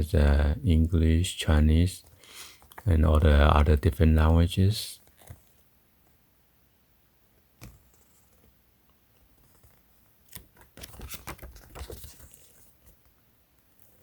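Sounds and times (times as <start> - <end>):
paper rustling: 9.4 - 13.1.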